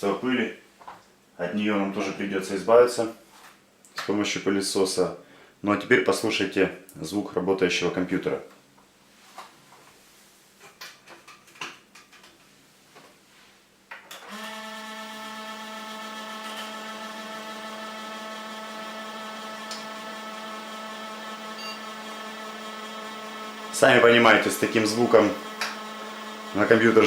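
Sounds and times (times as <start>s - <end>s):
computer fans humming: 14.8s - 27.0s.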